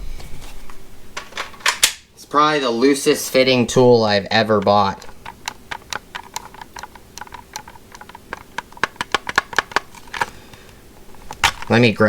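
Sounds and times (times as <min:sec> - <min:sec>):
battery and housing rattling: 0:03.3 - 0:12.0
plastic tool clicks and clacks: 0:03.7 - 0:11.8.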